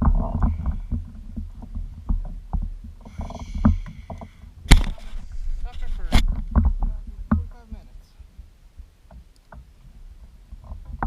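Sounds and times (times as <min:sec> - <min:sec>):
irregular knocks and clicks: 0:00.0 - 0:07.5, 0:08.8 - 0:11.0
low rumbling: 0:00.0 - 0:11.0
sharp loud click: 0:04.7 - 0:05.2.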